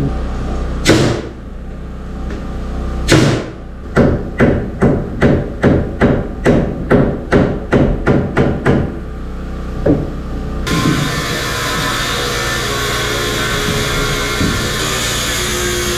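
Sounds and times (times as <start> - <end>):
hammer blows on wood: 10.7 - 15.9.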